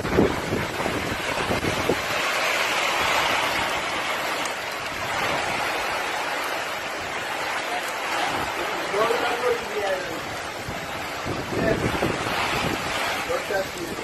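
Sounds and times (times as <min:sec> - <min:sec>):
driving water rushing: 0:00.0 - 0:14.0
hurricane wind roaring: 0:00.0 - 0:14.0.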